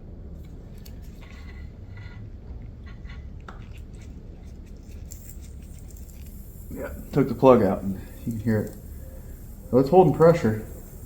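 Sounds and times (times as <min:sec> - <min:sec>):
air hissing: 0:04.6 - 0:11.0.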